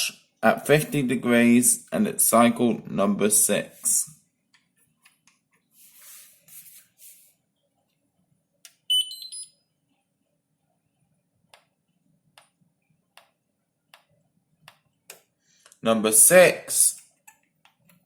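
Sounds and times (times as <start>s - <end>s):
dishwasher beep melody: 8.9s - 9.6s.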